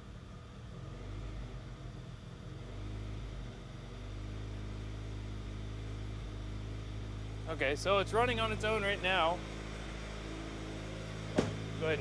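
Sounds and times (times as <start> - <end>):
car engine idling: 11.2 - 12.0.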